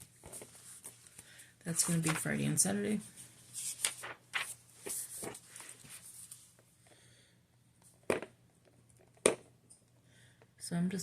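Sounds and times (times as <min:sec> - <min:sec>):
paper rustling: 0:00.1 - 0:06.5.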